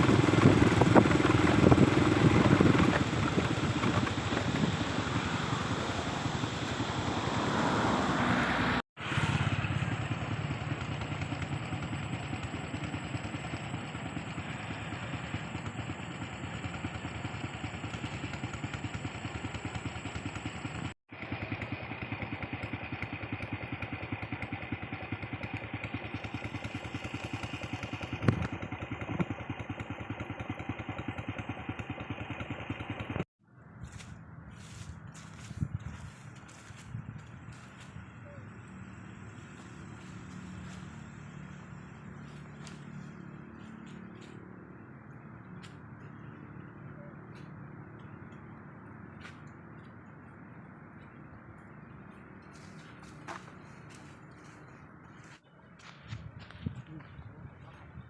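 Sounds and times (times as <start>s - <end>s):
motorbike engine running: 0.0s - 58.0s
quiet outdoor ambience: 33.4s - 58.0s.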